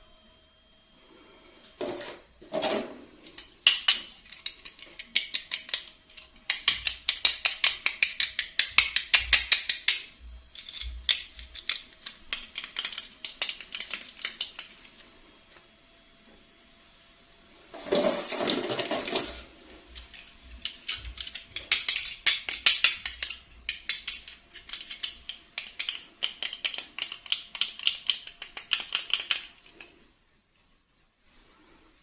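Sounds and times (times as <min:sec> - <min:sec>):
plastic doll parts clicking: 0:03.3 - 0:14.8, 0:20.0 - 0:29.9.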